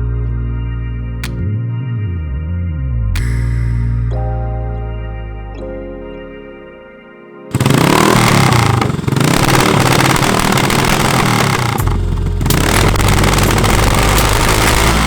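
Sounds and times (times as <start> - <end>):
motorcycle engine revving: 7.5 - 15.0.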